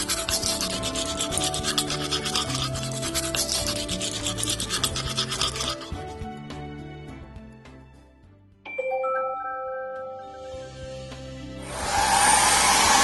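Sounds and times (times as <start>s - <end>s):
toothbrush scrubbing teeth: 0.0s - 6.3s
gentle background music: 0.0s - 13.0s.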